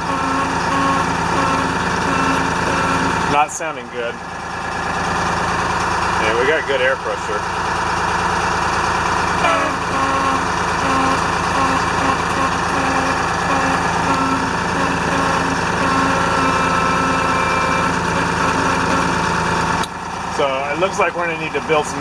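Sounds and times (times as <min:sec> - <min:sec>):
weak air horn tone: 0:00.0 - 0:03.4, 0:09.3 - 0:20.4
fire truck engine idling: 0:00.0 - 0:22.0.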